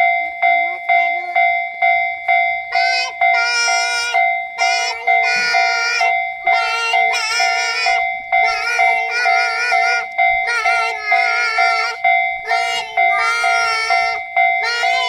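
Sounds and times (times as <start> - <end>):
level-crossing alarm ringing: 0.0 - 15.0.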